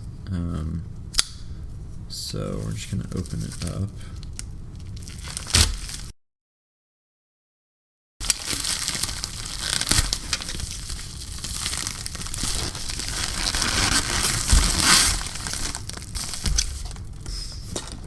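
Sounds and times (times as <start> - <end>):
packaging tearing and crinkling: 3.1 - 6.1, 8.2 - 17.3.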